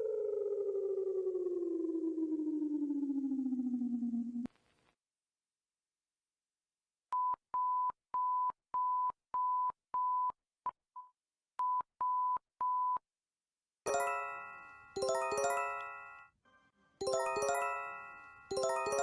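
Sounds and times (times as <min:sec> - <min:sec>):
electronic chime: 0:13.9 - 0:16.3, 0:17.0 - 0:19.0.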